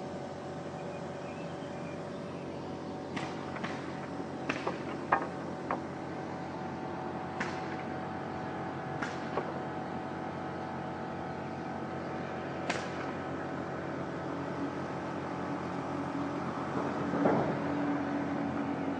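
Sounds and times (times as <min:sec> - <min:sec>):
steady mechanical hum: 0:00.0 - 0:18.9
sharp knocks and taps: 0:04.5 - 0:05.9.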